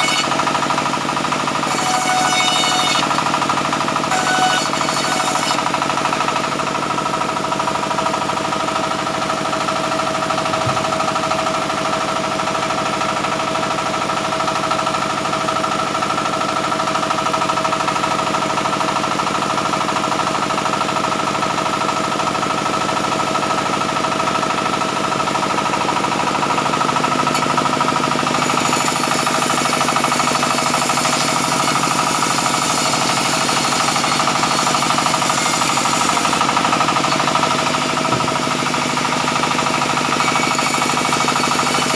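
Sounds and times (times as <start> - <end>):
band saw running: 0.0 - 41.9.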